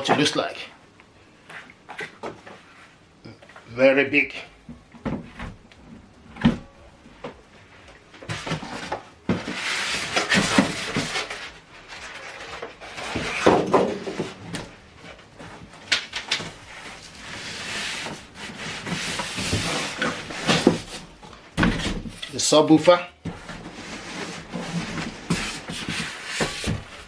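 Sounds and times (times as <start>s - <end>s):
packaging rubbing and rustling: 15.3s - 22.4s.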